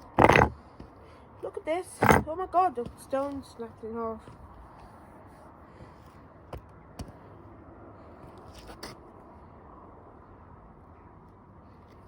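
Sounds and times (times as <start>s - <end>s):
low steady background noise: 0.0s - 12.0s.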